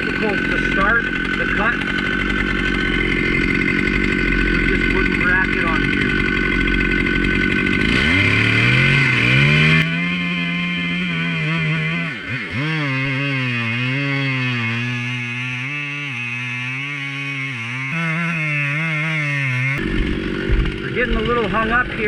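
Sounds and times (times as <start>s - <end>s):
chainsaw sawing a log: 0.0s - 22.0s.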